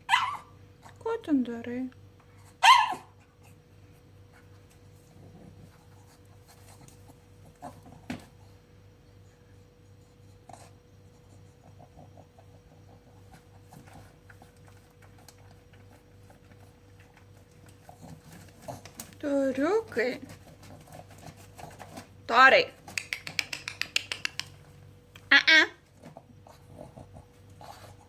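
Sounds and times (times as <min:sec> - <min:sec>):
low electrical hum: 0:00.0 - 0:28.0
dog scuffling and clicking: 0:13.3 - 0:22.2.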